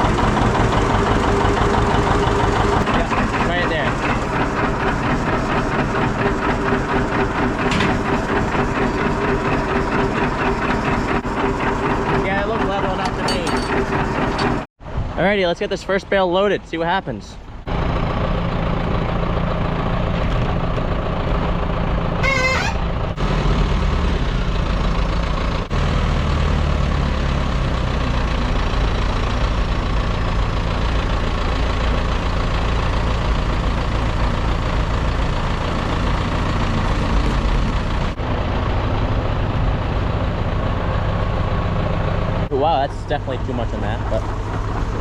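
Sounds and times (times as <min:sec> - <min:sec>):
hay baler working: 0:00.0 - 0:14.7, 0:17.7 - 0:45.0
tractor engine running: 0:00.0 - 0:14.7, 0:17.5 - 0:45.0.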